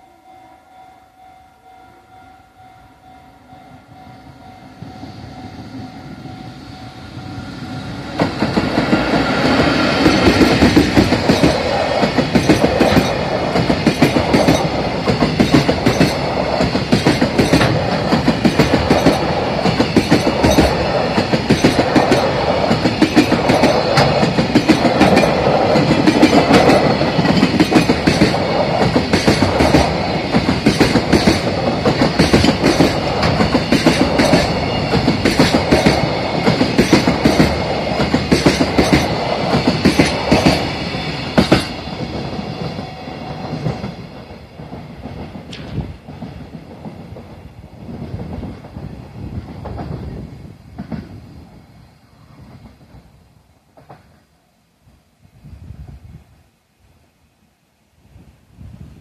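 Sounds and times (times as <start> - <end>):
faint steady tones: 0.0 - 8.6
loud rhythmic mechanical clatter: 10.1 - 40.7.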